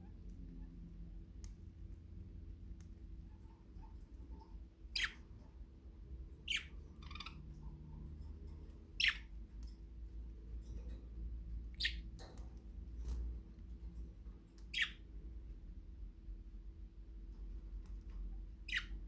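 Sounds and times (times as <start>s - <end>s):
budgerigar chirping: 4.9s - 5.2s, 6.5s - 7.4s, 9.0s - 9.3s, 11.8s - 12.0s, 14.7s - 15.0s, 18.6s - 19.0s.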